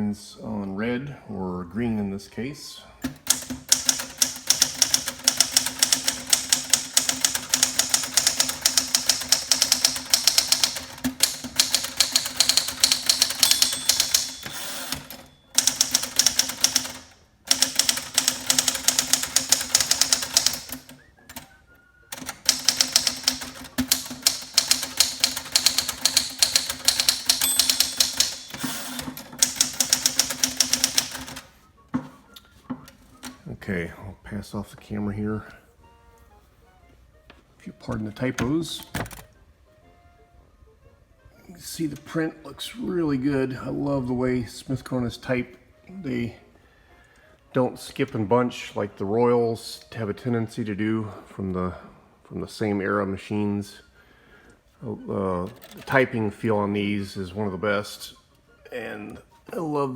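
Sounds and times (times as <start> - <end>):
typewriter key strikes: 3.1 - 20.8, 22.2 - 31.4
typewriter bell ding: 7.6 - 16.9, 22.5 - 28.8.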